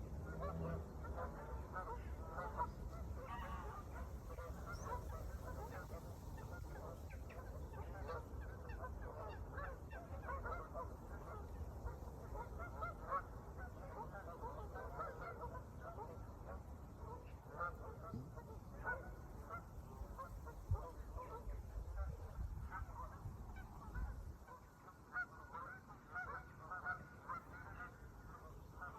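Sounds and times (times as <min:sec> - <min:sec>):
flock of birds chattering: 0:00.6 - 0:22.0.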